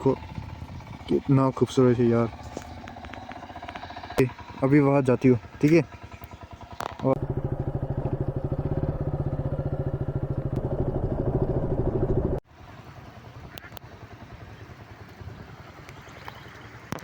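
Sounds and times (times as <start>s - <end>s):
motorcycle engine running: 0.0s - 12.4s.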